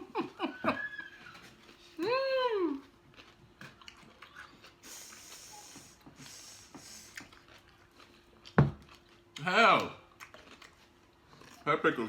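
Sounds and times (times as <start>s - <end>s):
whipped cream can hissing: 4.8s - 7.2s.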